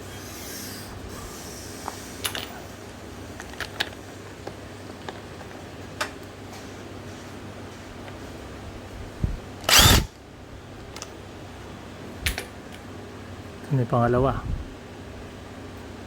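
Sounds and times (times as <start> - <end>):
metal parts and tools clicking: 9.7 - 10.1.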